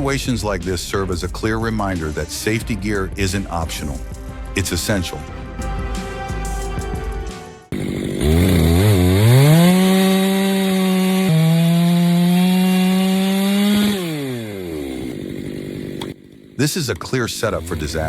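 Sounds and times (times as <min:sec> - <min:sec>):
chainsaw engine revving: 0:07.7 - 0:18.0.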